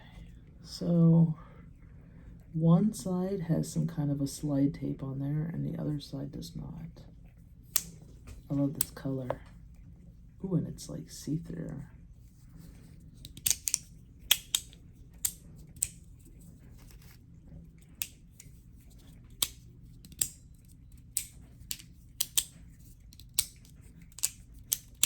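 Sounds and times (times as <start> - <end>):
magnetic slider fidget clicking: 13.2 - 16.2, 17.9 - 25.0.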